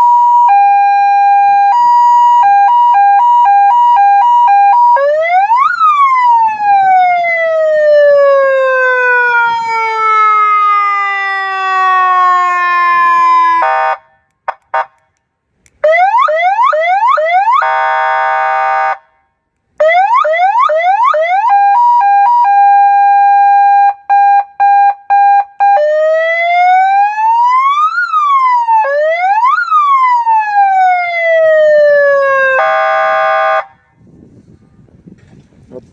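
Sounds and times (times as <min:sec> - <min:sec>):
electronic siren wailing and yelping: 0:00.0 - 0:14.0, 0:15.8 - 0:18.9, 0:19.8 - 0:33.6.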